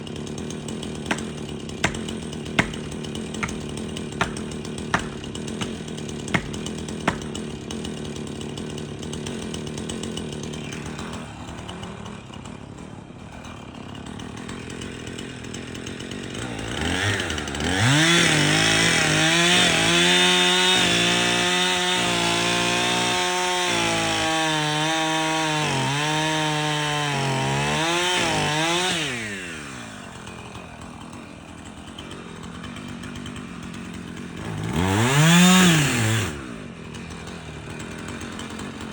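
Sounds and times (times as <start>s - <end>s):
chainsaw cutting into wood: 0.0s - 38.9s
chainsaw idling: 0.0s - 38.9s
sharp knocks: 1.1s - 7.4s.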